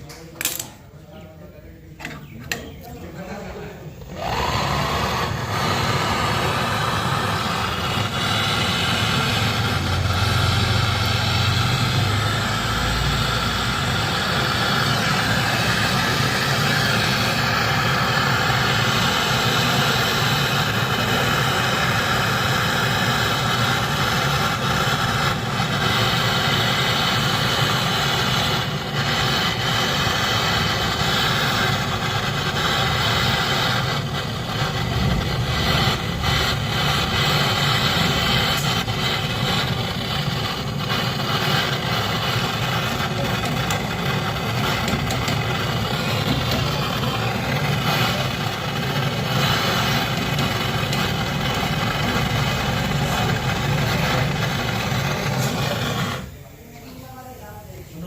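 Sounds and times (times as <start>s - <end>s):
machine motor droning: 2.1s - 56.4s.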